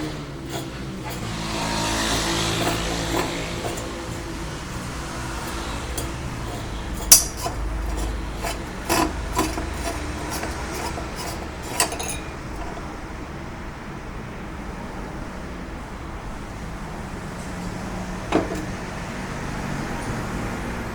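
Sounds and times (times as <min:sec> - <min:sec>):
machine humming: 0:00.0 - 0:13.5
scraping: 0:00.0 - 0:13.6, 0:17.4 - 0:19.2.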